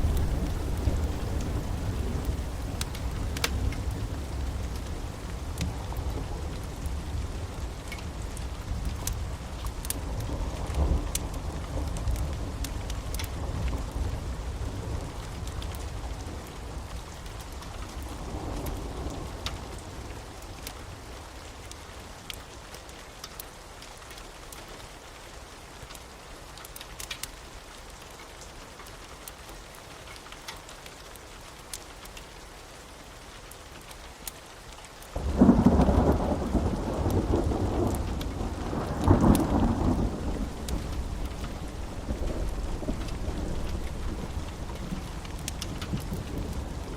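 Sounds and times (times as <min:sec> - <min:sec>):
loud thunderclap: 0:00.0 - 0:05.1, 0:35.2 - 0:46.9
rolling thunder: 0:00.0 - 0:09.4, 0:35.2 - 0:46.9
steady rain: 0:00.0 - 0:46.9.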